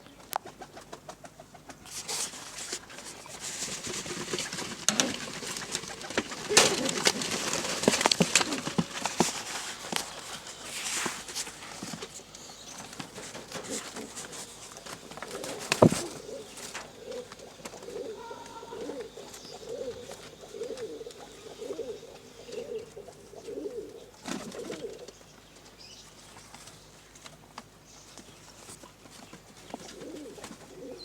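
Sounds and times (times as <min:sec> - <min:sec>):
pigeon cooing: 0:03.0 - 0:10.9, 0:11.6 - 0:25.2, 0:29.6 - 0:31.0.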